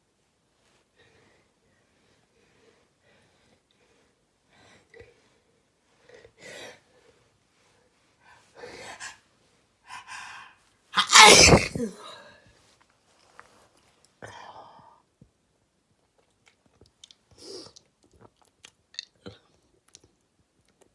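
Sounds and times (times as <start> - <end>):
person sneezing: 11.0 - 12.3.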